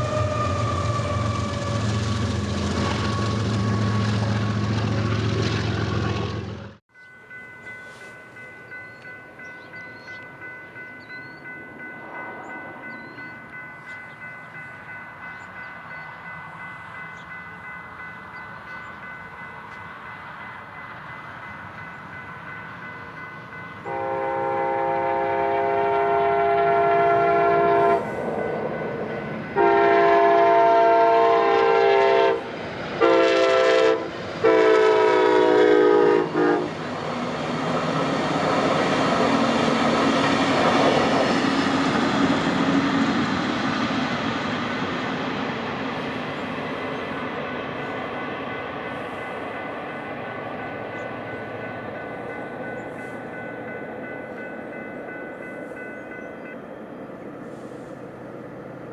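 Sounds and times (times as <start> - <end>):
train horn blasts: 0.0 - 4.6, 23.8 - 28.2, 29.4 - 36.8
railroad crossing bell ringing: 6.9 - 58.9.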